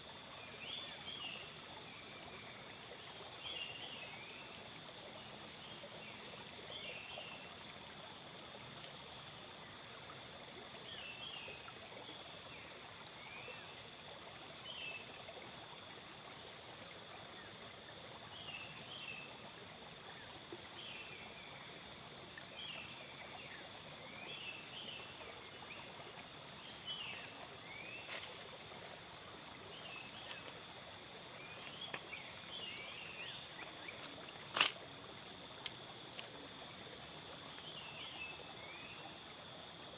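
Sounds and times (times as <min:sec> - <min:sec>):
high insect buzz: 0:27.2 - 0:39.4.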